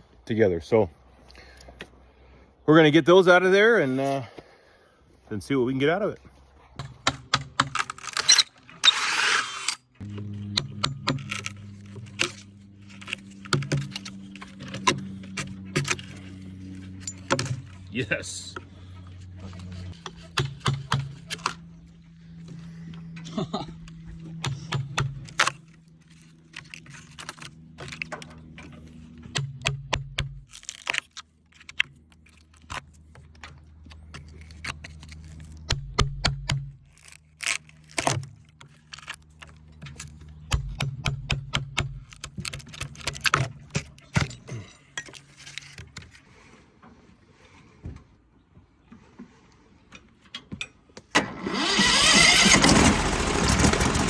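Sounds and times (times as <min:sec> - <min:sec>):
loud machine noise: 0:08.9 - 0:17.8, 0:51.2 - 0:54.0
low engine hum: 0:09.8 - 0:30.5.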